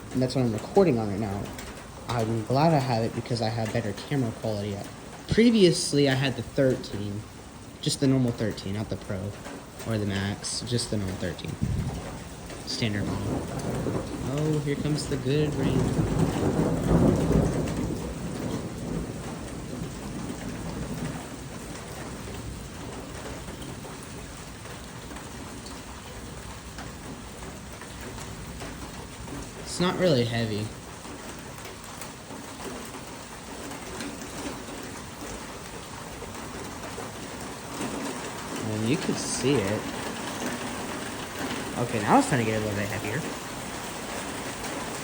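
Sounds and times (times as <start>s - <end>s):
heavy rain on metal gutters: 0.0s - 45.0s
low thunder rumble: 0.0s - 45.0s.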